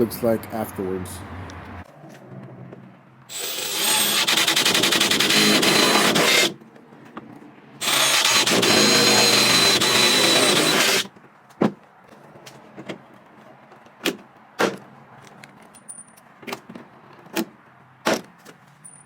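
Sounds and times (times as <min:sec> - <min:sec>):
power drill whining: 0:03.3 - 0:06.6, 0:07.8 - 0:11.1.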